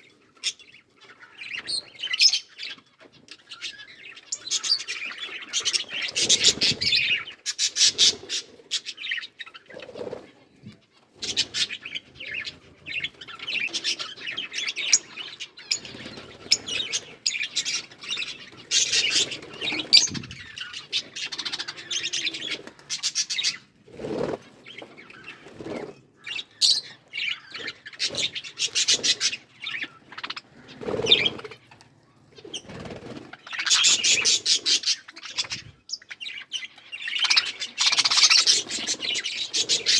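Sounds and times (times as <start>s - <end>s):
wing flutters: 5.3s - 10.4s, 11.2s - 35.7s, 37.2s - 39.9s
budgerigars chirping: 11.2s - 31.8s, 32.4s - 39.9s.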